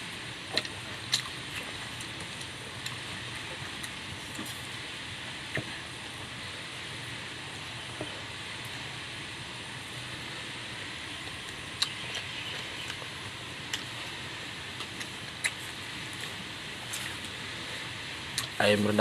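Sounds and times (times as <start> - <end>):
eating clicks and smacks: 0.4 - 4.6, 11.2 - 17.4, 18.3 - 18.6.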